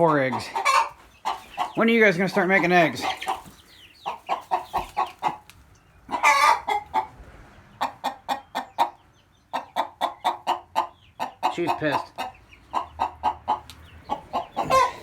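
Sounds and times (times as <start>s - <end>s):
hen squawking: 0.0s - 5.4s, 6.1s - 7.1s, 9.6s - 15.0s
hens clucking: 0.0s - 15.0s.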